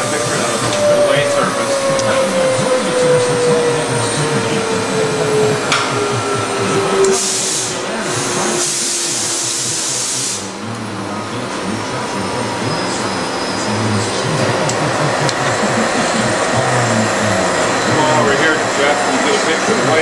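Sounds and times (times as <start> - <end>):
mechanical whine sliding down: 0.0 - 8.6
loud hiss: 0.0 - 10.6
machine-shop noise: 0.0 - 20.0.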